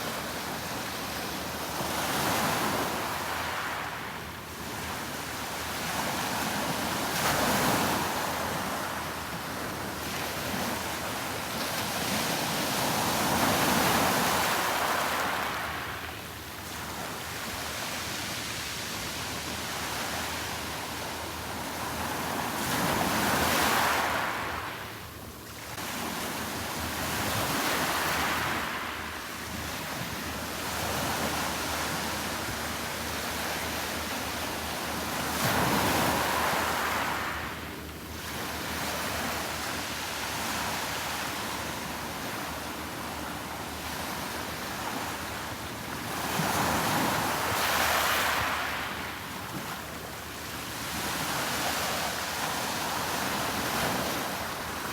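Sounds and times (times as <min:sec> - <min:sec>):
sea waves washing onto beach: 0:25.8 - 0:54.9.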